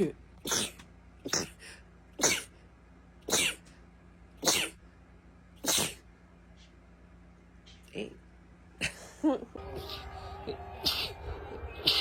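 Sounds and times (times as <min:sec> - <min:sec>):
high-pitched sneezes: 0:00.4 - 0:02.6, 0:03.2 - 0:03.7, 0:04.4 - 0:04.8, 0:05.6 - 0:06.1.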